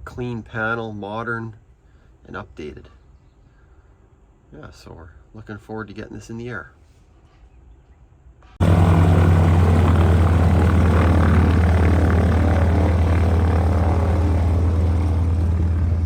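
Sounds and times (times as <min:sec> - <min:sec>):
propeller aircraft engine droning: 0:08.6 - 0:16.0.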